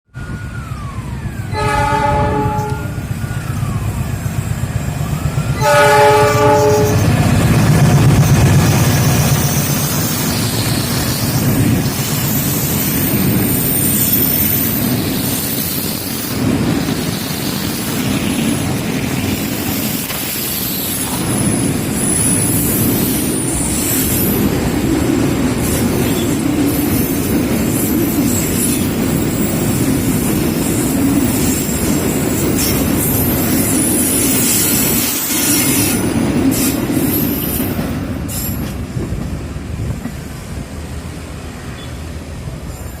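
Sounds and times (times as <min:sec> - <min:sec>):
freight train passing: 0:00.1 - 0:43.0
train horn blasts: 0:01.5 - 0:03.1, 0:05.6 - 0:07.1.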